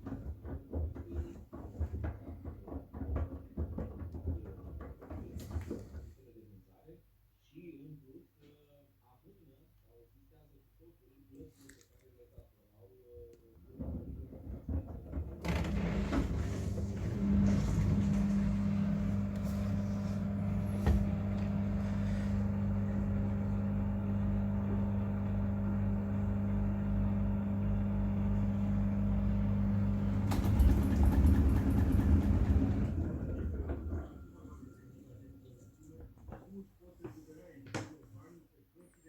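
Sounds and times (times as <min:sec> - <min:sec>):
washing machine motor humming: 0:13.6 - 0:36.6.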